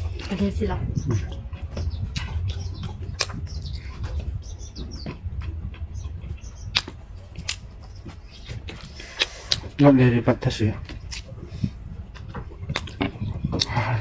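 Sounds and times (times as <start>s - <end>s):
wet chewing and lip smacks: 0.0s - 9.8s, 10.4s - 13.8s
low steady hum: 0.0s - 14.0s
sharp clicks: 6.7s - 7.6s.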